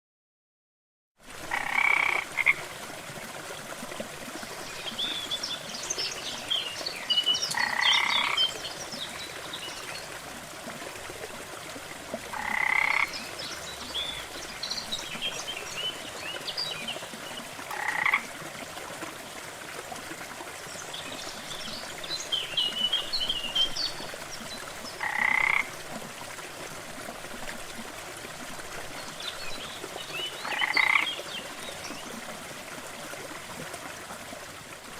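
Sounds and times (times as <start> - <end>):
frog croaking: 1.5 - 2.6, 7.6 - 8.4, 12.3 - 13.1, 17.7 - 18.3, 25.0 - 25.7, 30.4 - 31.1.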